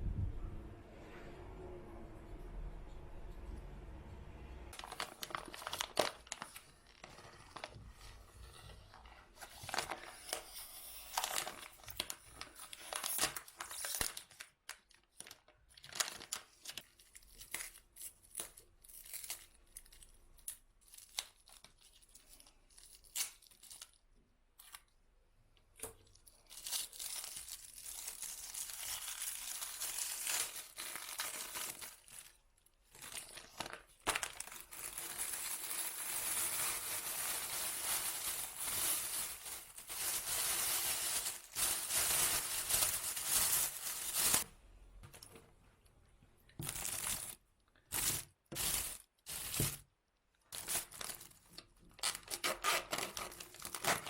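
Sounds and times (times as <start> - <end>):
material rustling and tearing: 4.8 - 8.2, 26.3 - 44.5.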